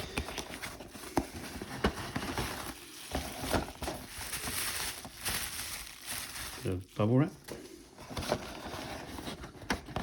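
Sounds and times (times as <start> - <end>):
bubble wrap and cardboard crinkling: 0.0 - 7.4.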